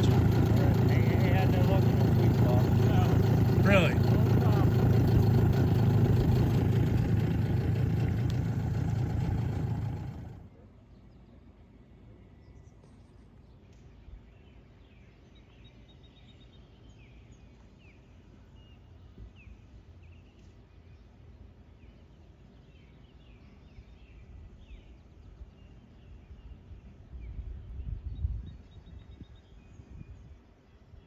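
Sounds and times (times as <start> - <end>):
birds chirping and singing: 0.0 - 10.4
faint low rumble: 0.0 - 10.5.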